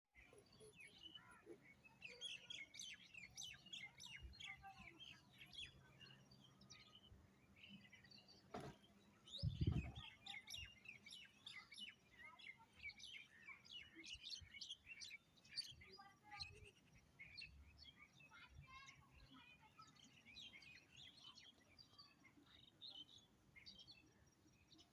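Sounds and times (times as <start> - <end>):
small birds chirping: 0.1 - 24.9
low thump: 8.5 - 8.8.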